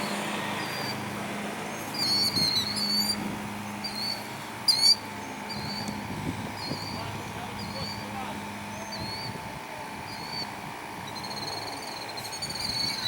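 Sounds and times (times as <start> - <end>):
bird calling shrill high notes: 0.0 - 1.0, 1.7 - 6.0, 6.6 - 8.1, 8.7 - 9.4, 11.1 - 13.0.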